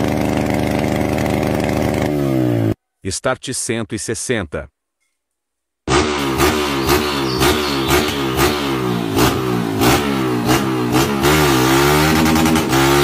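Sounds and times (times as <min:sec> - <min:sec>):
motorcycle engine revving: 0:00.0 - 0:02.8, 0:05.9 - 0:13.0
exhaust cracking at rev limiter: 0:05.9 - 0:13.0.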